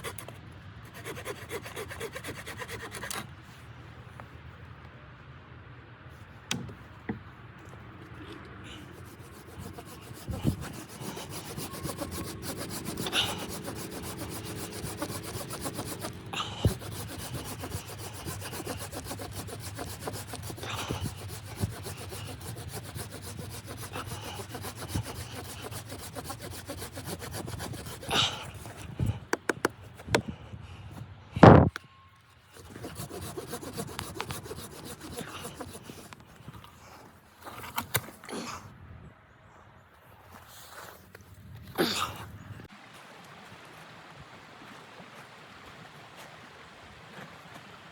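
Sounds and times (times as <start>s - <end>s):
rasping and rubbing on wood: 0.0s - 0.3s, 0.9s - 3.3s, 8.7s - 30.3s, 32.5s - 36.3s.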